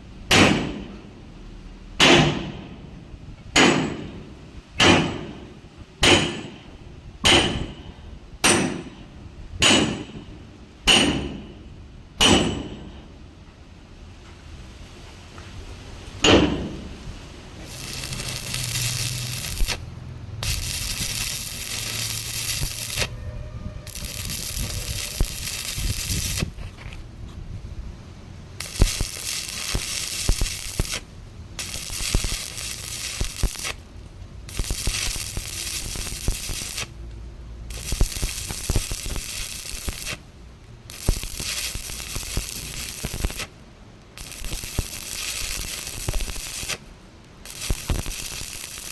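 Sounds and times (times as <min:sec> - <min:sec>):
ringing metal clang: 0:12.2 - 0:13.1
welding arc crackling and sizzling: 0:16.5 - 0:27.7, 0:28.4 - 0:48.9.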